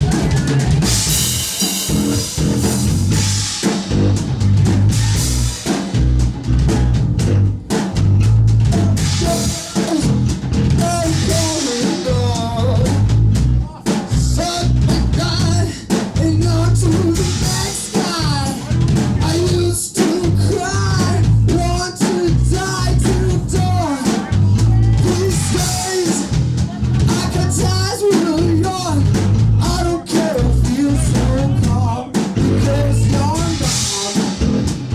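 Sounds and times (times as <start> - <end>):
band music with drums and bass: 0.0 - 34.9
person singing: 8.7 - 34.8.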